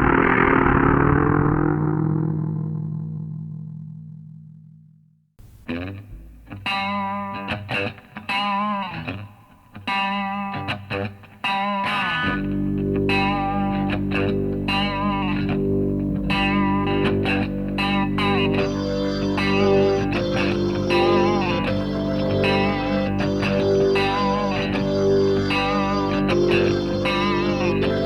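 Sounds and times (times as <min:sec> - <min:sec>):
electric guitar bending notes: 0:11.9 - 0:28.0
low held chord: 0:12.3 - 0:28.0.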